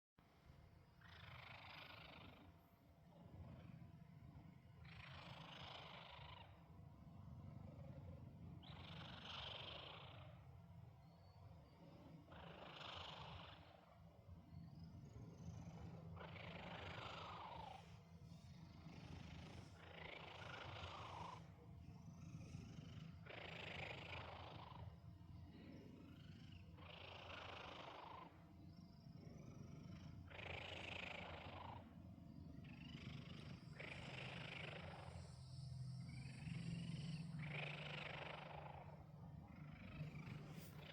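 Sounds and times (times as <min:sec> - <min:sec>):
cat purring: 0:01.0 - 0:10.5, 0:11.6 - 0:40.9
cat snoring breaths: 0:15.1 - 0:28.3, 0:29.2 - 0:31.9, 0:32.6 - 0:35.4, 0:39.6 - 0:40.9.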